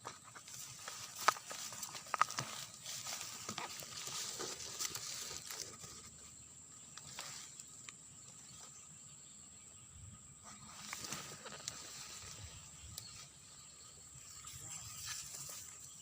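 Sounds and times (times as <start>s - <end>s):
high insect drone: 0.0s - 16.0s.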